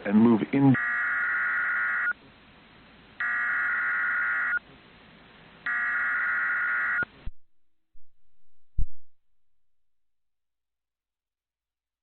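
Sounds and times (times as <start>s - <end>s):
digital data bursts: 0.7s - 2.2s, 3.2s - 4.6s.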